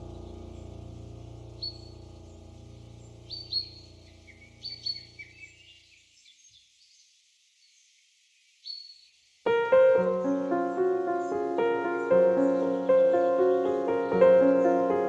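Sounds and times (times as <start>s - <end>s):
musical tail: 0.0s - 4.6s
piano piece: 0.0s - 5.5s, 9.5s - 15.0s
high bird chirps: 0.0s - 6.9s.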